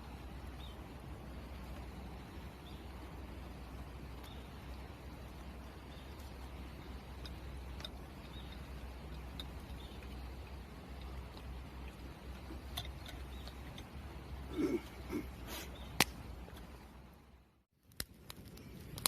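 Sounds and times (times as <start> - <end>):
steady low rumble: 0.0 - 19.0
faint clicks and ticks: 5.9 - 14.4.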